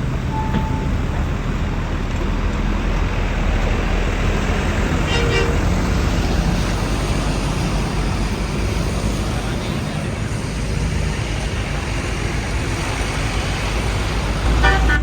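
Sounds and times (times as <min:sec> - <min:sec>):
bus engines and traffic rumble: 0:00.0 - 0:15.0
short horn toot: 0:05.1 - 0:06.1, 0:14.5 - 0:15.0.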